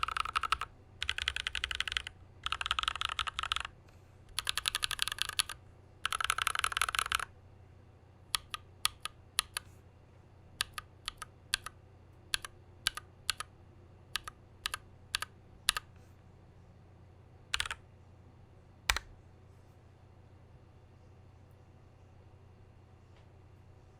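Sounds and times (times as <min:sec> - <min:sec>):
mechanical keyboard typing: 0:00.0 - 0:03.7, 0:04.3 - 0:07.3, 0:08.3 - 0:09.7, 0:10.6 - 0:11.7, 0:12.3 - 0:13.5, 0:14.2 - 0:15.9, 0:17.5 - 0:17.8, 0:18.9 - 0:19.1.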